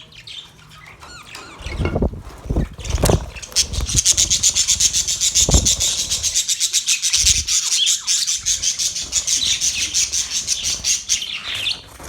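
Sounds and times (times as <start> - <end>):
budgerigars chirping: 2.6 - 11.8.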